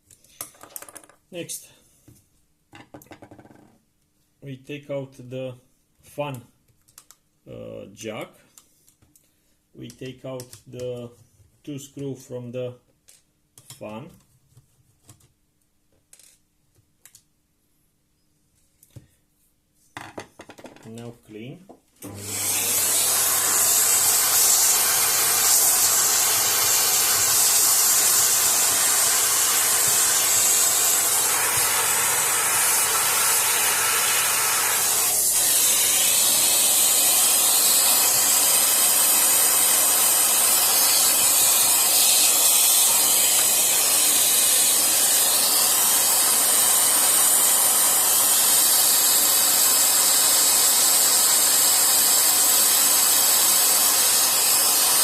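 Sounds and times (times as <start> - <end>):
compressed air hissing: 22.4 - 55.0.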